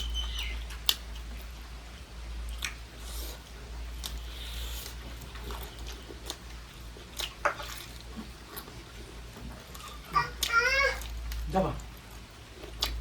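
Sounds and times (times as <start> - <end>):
person chewing food: 0.0 - 1.6, 2.3 - 13.0
low steady hum: 0.0 - 13.0
wet mouth clicks and smacks: 0.7 - 1.3, 2.5 - 3.2, 7.2 - 7.8, 12.6 - 13.0.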